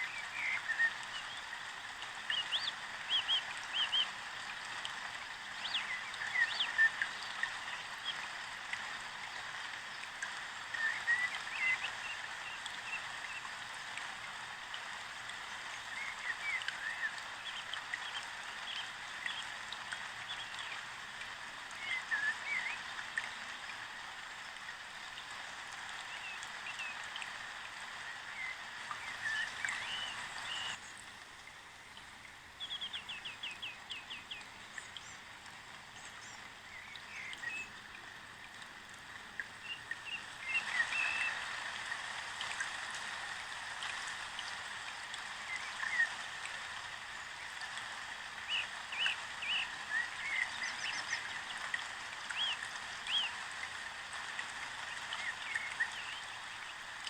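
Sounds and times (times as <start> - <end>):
small birds chirping: 28.3 - 31.0, 32.6 - 35.3.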